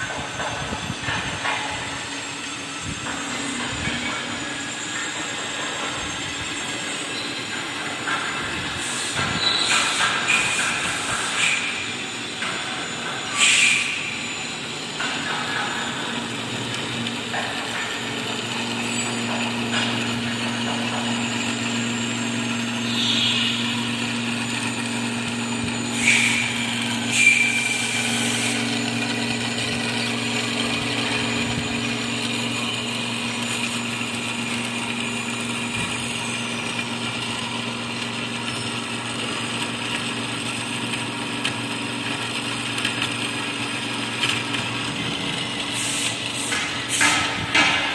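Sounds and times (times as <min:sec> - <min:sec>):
band saw humming: 0:00.0 - 0:47.9
short hissing bursts: 0:13.4 - 0:13.9.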